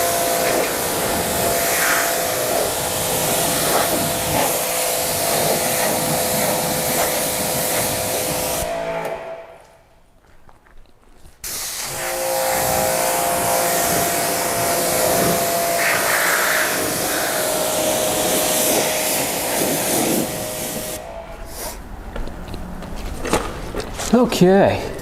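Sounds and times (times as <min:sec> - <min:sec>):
pressure washer spraying: 0:00.0 - 0:09.4, 0:11.4 - 0:21.8
pump motor whine: 0:00.0 - 0:09.8, 0:11.5 - 0:22.9.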